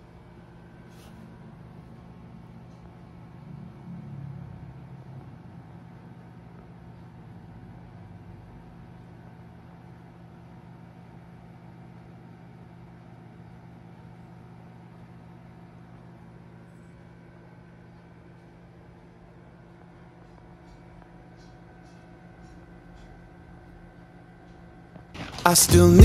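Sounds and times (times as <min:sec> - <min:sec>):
low machine hum: 0:00.0 - 0:26.0.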